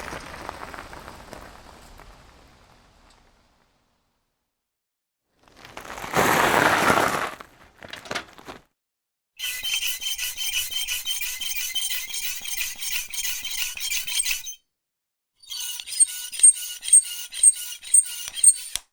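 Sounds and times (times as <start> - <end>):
bicycle rapid metallic ticking: 9.4 - 14.6, 15.4 - 18.8.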